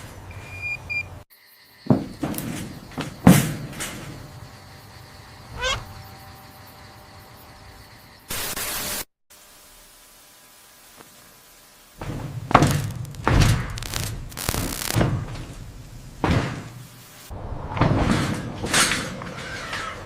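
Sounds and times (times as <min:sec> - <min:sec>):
kitten mewing: 0:05.6 - 0:06.0
static hiss burst: 0:08.3 - 0:17.3.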